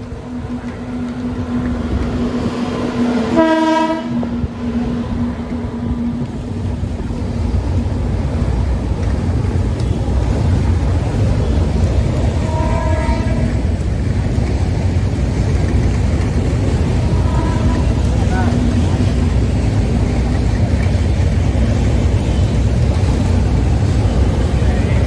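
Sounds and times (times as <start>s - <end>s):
train horn: 0.0s - 5.2s, 11.2s - 13.8s, 16.8s - 19.3s
train rumbling over bridge: 0.0s - 25.0s.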